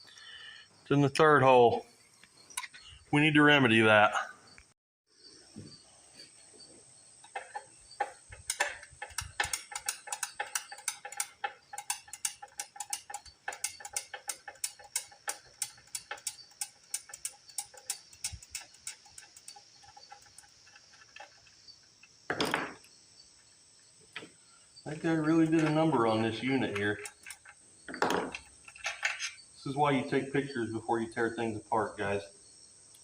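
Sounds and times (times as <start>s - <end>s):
ratchet wrench clicking: 7.2s - 22.2s, 25.3s - 27.6s.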